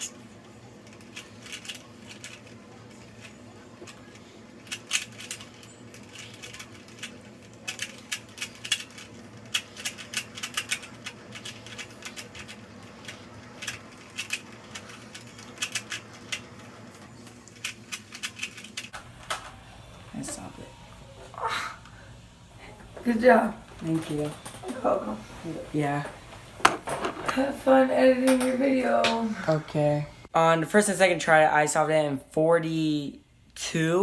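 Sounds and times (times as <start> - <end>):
puzzle cube clicking as turned: 4.6 - 16.5, 17.5 - 18.9.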